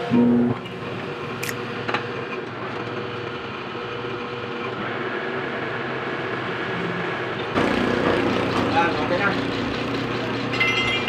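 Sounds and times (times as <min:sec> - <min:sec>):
metal lathe humming: 0:07.3 - 0:11.0.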